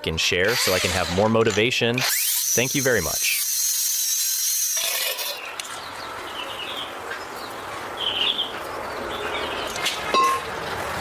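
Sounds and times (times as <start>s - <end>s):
outdoor background noise: 0.0s - 11.0s
birds chirping: 5.3s - 10.6s.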